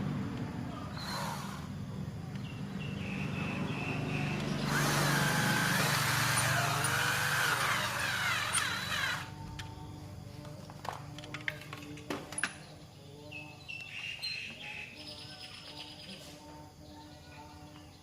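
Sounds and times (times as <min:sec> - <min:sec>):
power tool motor whining: 0:01.0 - 0:01.7, 0:04.4 - 0:09.4.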